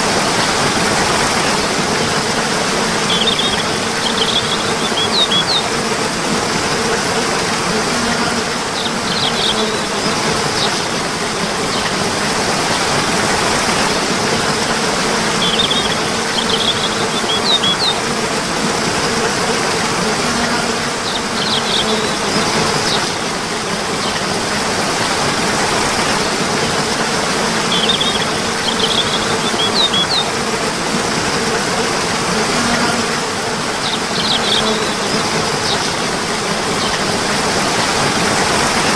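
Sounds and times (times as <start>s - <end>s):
rushing water: 0.0s - 38.9s
bird chirps: 3.1s - 5.7s, 8.8s - 9.9s, 15.4s - 18.0s, 21.0s - 23.1s, 27.7s - 30.3s, 33.8s - 34.9s.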